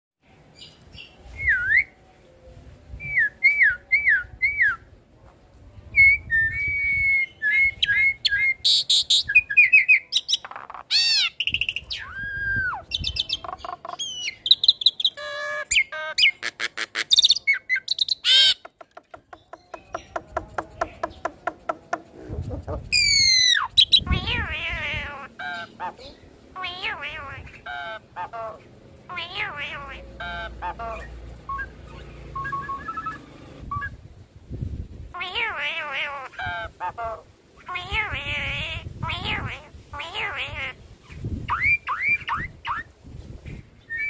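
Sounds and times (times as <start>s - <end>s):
starling singing: 6.2s - 34.0s, 35.1s - 42.9s.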